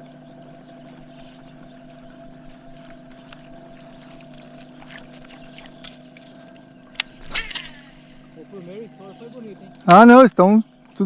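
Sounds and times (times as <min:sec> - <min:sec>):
water lapping: 0:00.0 - 0:09.8
boat motor humming: 0:00.0 - 0:11.0
small splashes: 0:00.8 - 0:08.6.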